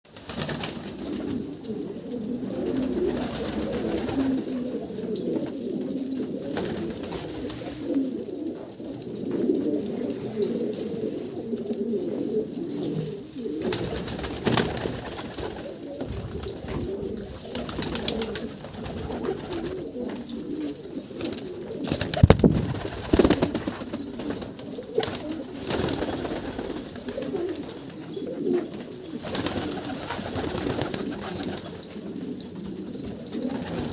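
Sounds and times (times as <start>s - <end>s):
pigeons cooing: 0.2s - 33.9s.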